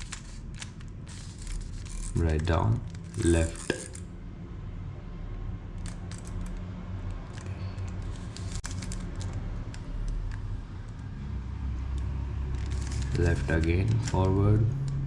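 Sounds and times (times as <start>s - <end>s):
puzzle cube clicking and clacking: 0.0s - 4.0s, 5.8s - 11.1s.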